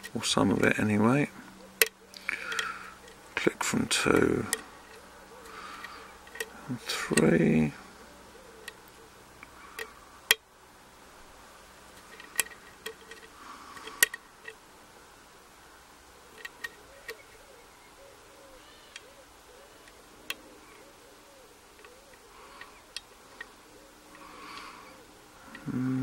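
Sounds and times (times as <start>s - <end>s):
faint scraping of lock pick: 12.0s - 14.6s.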